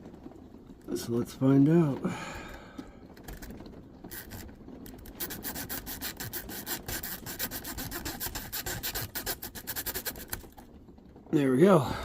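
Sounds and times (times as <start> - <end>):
zip tie raking in lock keyway: 4.1 - 10.6.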